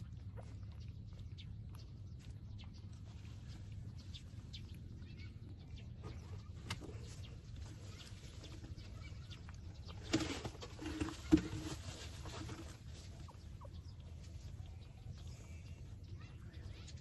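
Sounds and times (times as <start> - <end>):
puppies squeaking and whimpering: 13.0 - 14.8.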